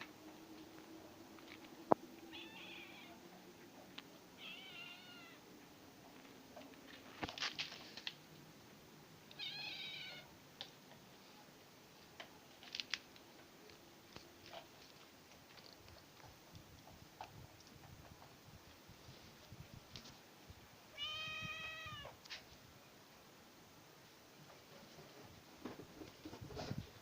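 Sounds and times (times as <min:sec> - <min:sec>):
cat meowing: 0:02.3 - 0:03.2, 0:04.4 - 0:05.4, 0:09.3 - 0:10.3, 0:20.9 - 0:22.2.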